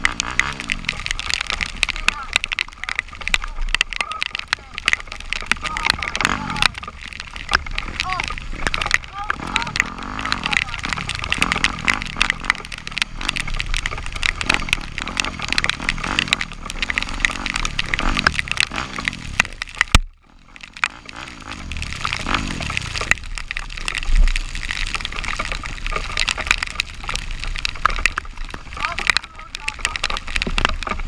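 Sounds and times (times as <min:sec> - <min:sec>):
off-road vehicle engine revving: 0:00.0 - 0:01.4, 0:05.6 - 0:19.6, 0:20.3 - 0:23.1
heavy rain: 0:00.0 - 0:31.0
water spattering and sloshing: 0:00.0 - 0:31.0.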